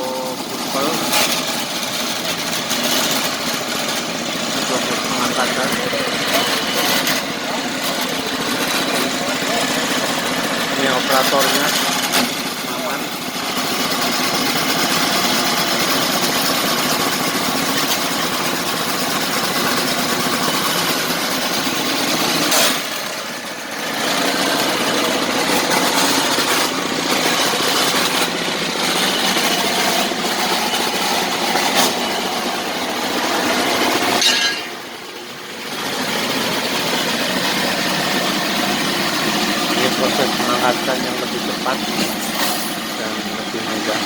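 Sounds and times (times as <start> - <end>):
drilling rig engine running: 0.0 - 44.0.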